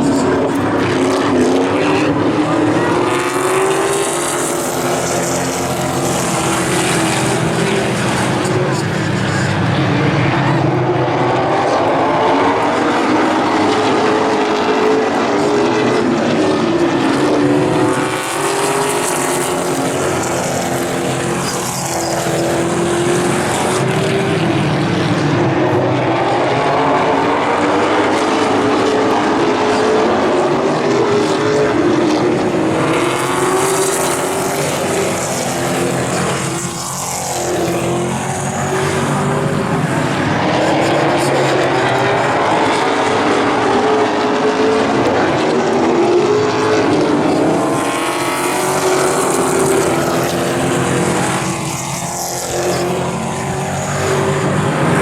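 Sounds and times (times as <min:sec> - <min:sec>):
stock car engines racing: 0:00.0 - 0:55.0.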